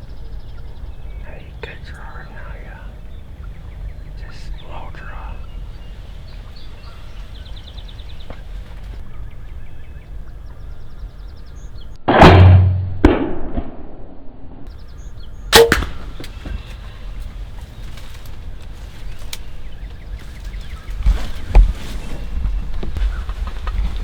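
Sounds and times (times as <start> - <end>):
bow shot release: 15.5 - 16.7
sharp crack: 15.5 - 17.1.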